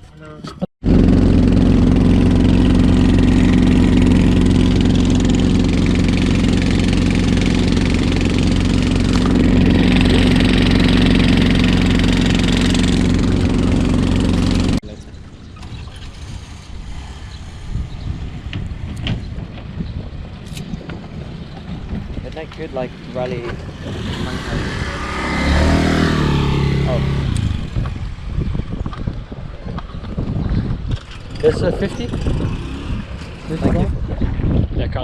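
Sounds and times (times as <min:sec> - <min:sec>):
engine droning: 0:00.8 - 0:17.6, 0:22.2 - 0:28.2.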